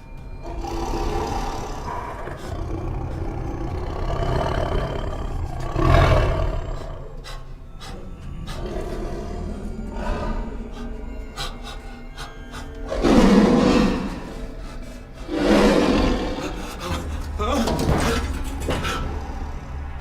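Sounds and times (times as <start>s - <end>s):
background music: 0.0s - 20.0s
lions roaring and growling: 0.0s - 20.0s.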